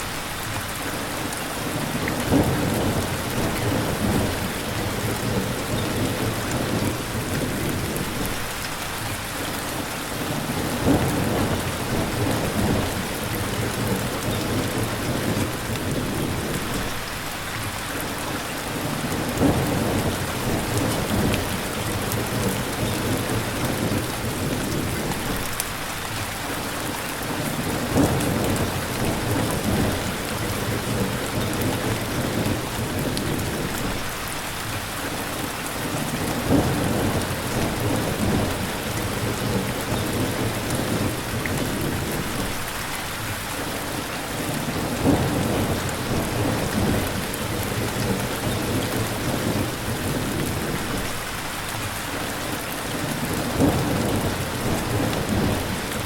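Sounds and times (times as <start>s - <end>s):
heavy rain: 0.0s - 56.0s
low rumble of thunder: 2.0s - 8.6s, 10.2s - 17.0s, 18.8s - 25.6s, 27.5s - 34.2s, 35.9s - 42.6s, 44.4s - 51.4s, 53.1s - 56.0s.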